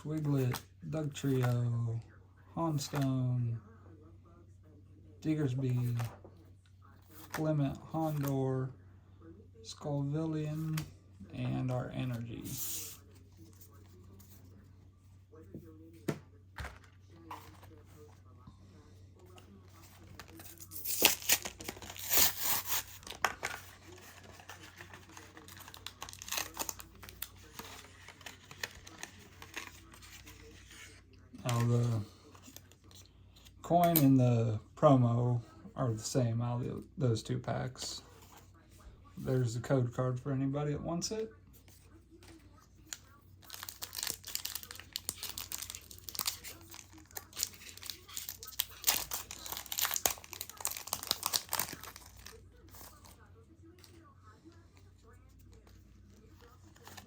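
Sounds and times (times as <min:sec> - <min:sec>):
card packaging crinkling and tearing: 0:19.3 - 0:34.0, 0:42.3 - 0:54.0, 0:55.0 - 0:57.0.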